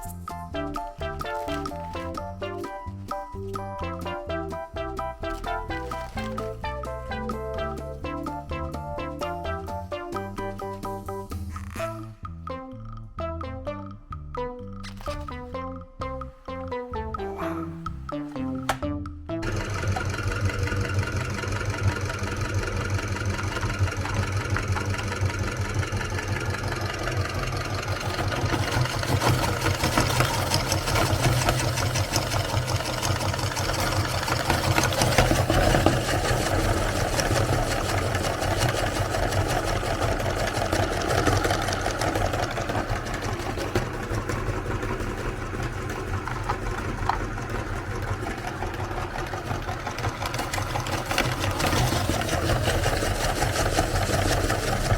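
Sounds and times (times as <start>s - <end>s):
meat grinder motor running: 19.4s - 54.9s
cookies crackling being ground: 27.7s - 54.9s.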